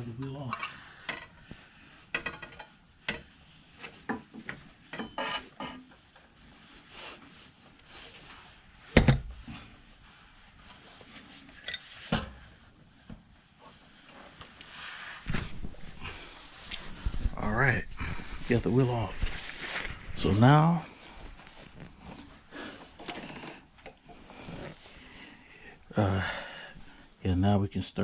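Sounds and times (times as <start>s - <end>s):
metal tools clinking and scraping: 0.1s - 1.4s, 2.1s - 3.3s, 4.5s - 5.8s, 11.5s - 12.0s.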